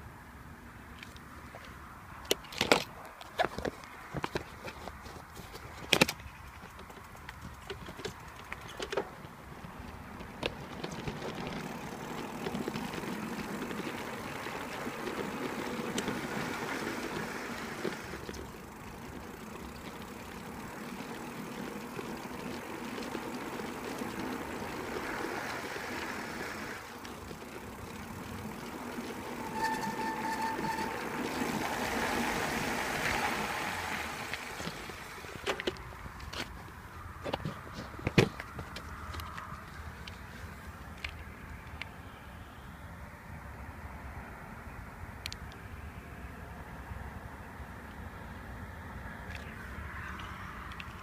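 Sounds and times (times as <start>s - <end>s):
bicycle rolling: 0.0s - 42.4s, 45.2s - 51.0s
high brake squeal: 29.0s - 31.9s.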